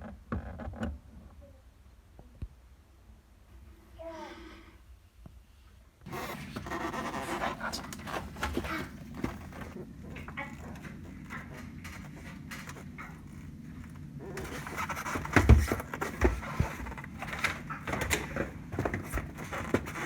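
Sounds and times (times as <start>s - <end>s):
knocks rattles and scraping: 6.1s - 20.0s
heavy thumps: 6.2s - 13.4s.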